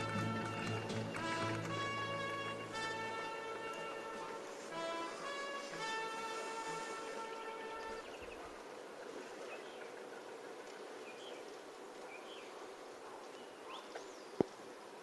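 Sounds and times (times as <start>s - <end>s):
outdoor background noise: 0.0s - 15.0s
small birds chirping: 11.0s - 14.6s.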